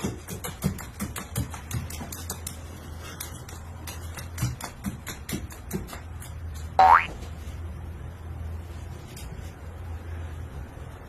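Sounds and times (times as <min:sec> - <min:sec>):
low steady hum: 0:06.1 - 0:11.0.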